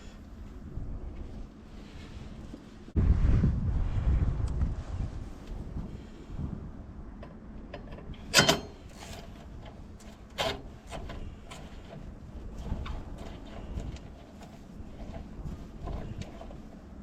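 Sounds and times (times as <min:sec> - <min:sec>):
tools clicking and knocking: 0:07.2 - 0:11.7.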